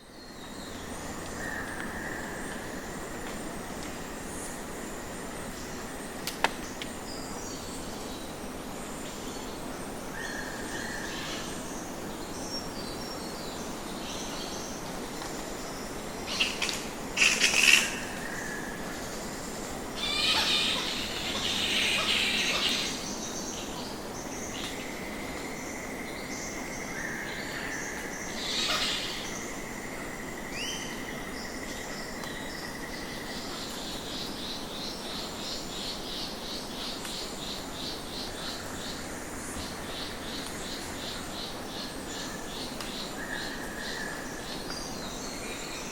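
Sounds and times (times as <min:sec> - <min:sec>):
insects trilling and chirping: 0:00.0 - 0:45.9
flying foxes screeching: 0:20.0 - 0:23.0, 0:28.4 - 0:29.4.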